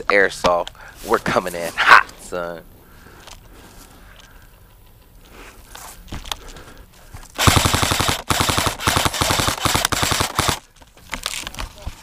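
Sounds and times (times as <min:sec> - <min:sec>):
airsoft rifle firing full auto: 0:07.4 - 0:10.6.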